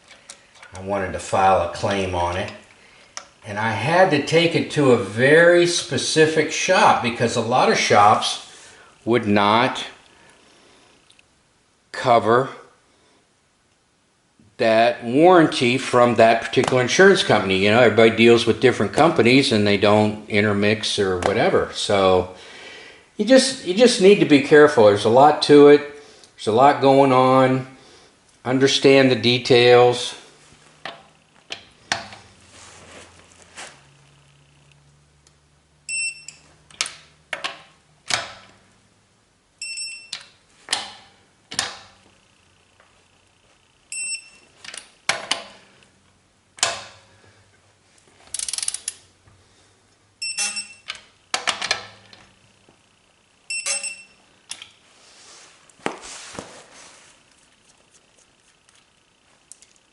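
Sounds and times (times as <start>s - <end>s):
sharp clicks and knocks: 36.7s - 38.5s
short high-pitched electronic beeps: 50.2s - 50.9s, 53.5s - 54.2s.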